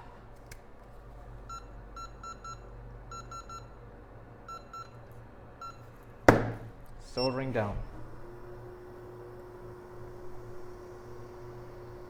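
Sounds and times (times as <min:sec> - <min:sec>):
short electronic beeps: 0:01.5 - 0:03.7.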